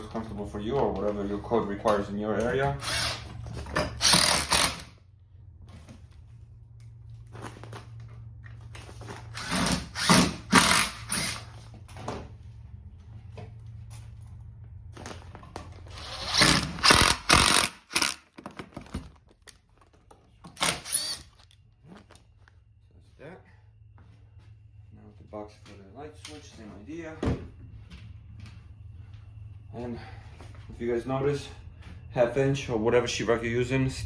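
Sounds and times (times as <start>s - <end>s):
steady low hum: 0.0s - 34.0s
power drill driving screws: 2.8s - 4.9s, 9.3s - 11.5s, 15.9s - 18.3s, 20.6s - 21.4s.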